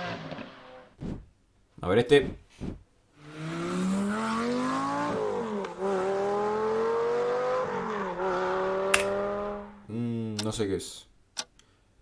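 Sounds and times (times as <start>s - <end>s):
sports car engine accelerating: 3.2s - 9.9s.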